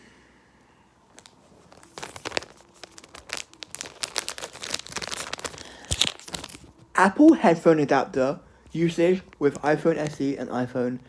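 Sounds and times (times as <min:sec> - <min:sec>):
packaging crinkling and tearing: 0:01.1 - 0:07.0.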